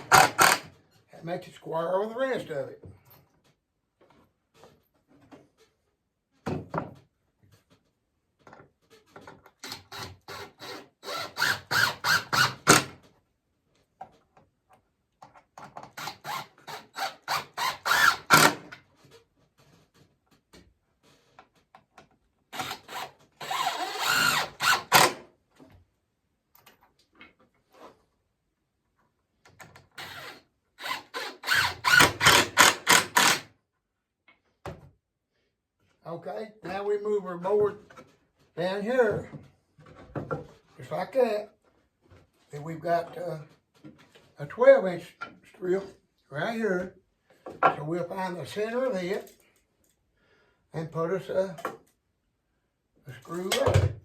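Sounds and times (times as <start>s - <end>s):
cordless drill driving screws: 0.0s - 0.7s, 9.6s - 13.0s, 15.9s - 18.7s, 22.5s - 25.2s, 30.0s - 33.5s.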